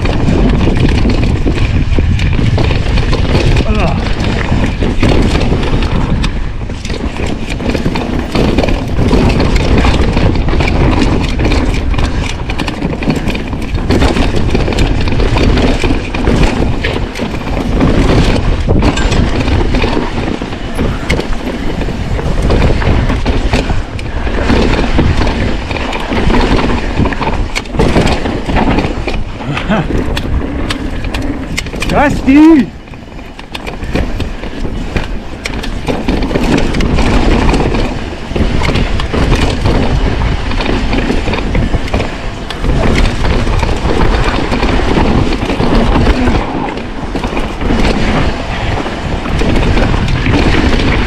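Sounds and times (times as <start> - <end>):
bike clattering and rattling: 0.0 - 51.0
wind buffeting microphone: 0.0 - 51.0.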